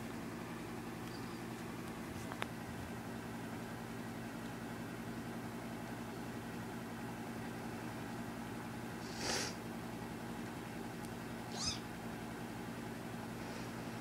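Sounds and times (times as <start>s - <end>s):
kitten mewing: 11.5s - 11.9s.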